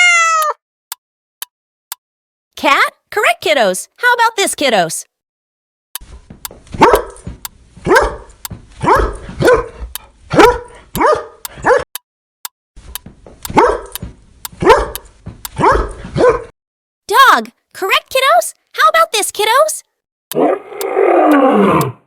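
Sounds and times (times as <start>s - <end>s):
dog barking: 6.8s - 7.2s, 7.8s - 11.9s, 13.5s - 14.0s, 14.6s - 15.0s, 15.6s - 16.5s.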